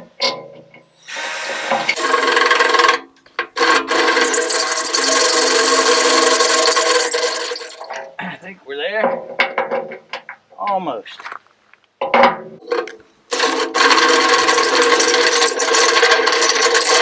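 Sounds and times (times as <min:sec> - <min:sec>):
power drill grinding into metal: 0:01.0 - 0:08.1, 0:12.6 - 0:17.0.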